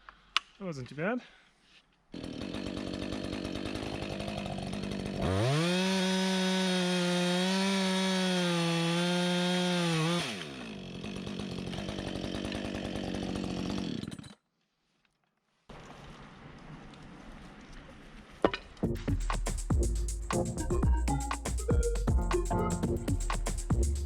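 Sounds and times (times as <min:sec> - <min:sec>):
chainsaw revving: 0:02.1 - 0:14.4.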